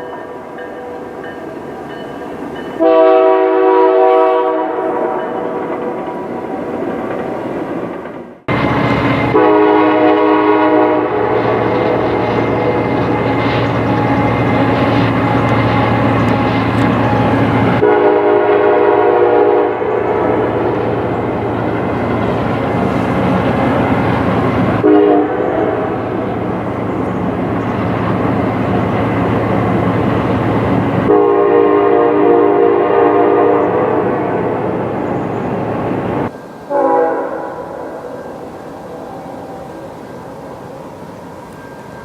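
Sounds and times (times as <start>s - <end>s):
locomotive air horn chord: 2.8s - 5.6s, 9.2s - 13.3s, 14.0s - 20.8s, 24.8s - 26.2s, 31.0s - 34.6s, 36.6s - 40.1s
diesel locomotive engine running: 8.4s - 42.0s.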